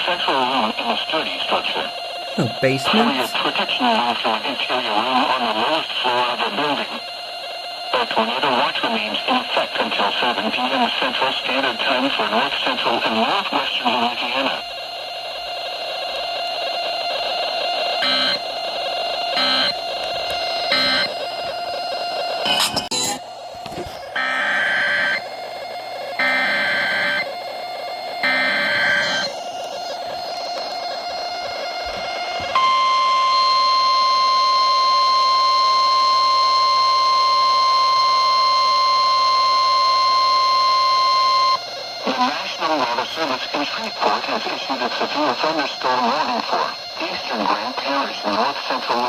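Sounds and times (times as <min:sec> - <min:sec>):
droning background tone: 0:00.0 - 0:49.0
alert data tone bursts: 0:02.4 - 0:03.4, 0:18.0 - 0:18.4, 0:19.4 - 0:19.8, 0:20.6 - 0:21.1, 0:24.2 - 0:25.2, 0:26.1 - 0:27.3, 0:28.0 - 0:43.6.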